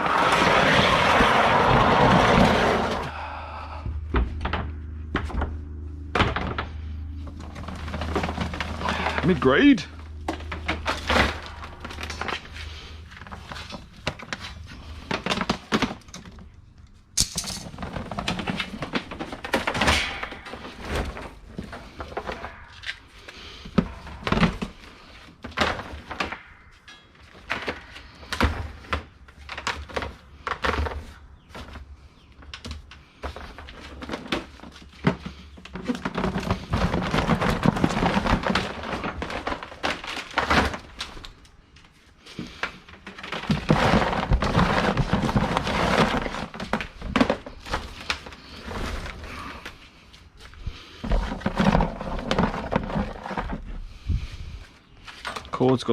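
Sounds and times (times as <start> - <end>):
rummaging through scrap: 0.0 - 3.1, 5.2 - 16.5, 17.2 - 55.9
scrap knocking and clattering: 42.4 - 49.3, 50.6 - 54.2.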